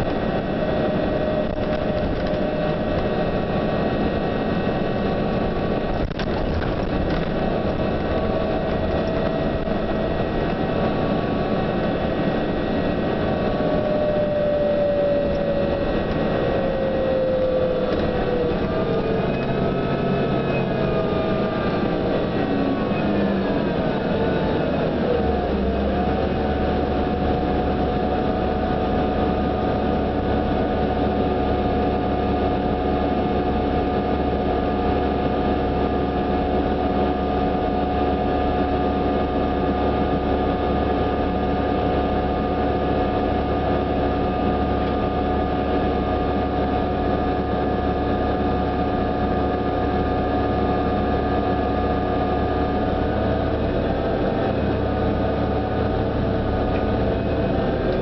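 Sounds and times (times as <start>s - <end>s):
bus drivetrain whine: 0.0s - 58.0s
low engine hum: 0.0s - 58.0s.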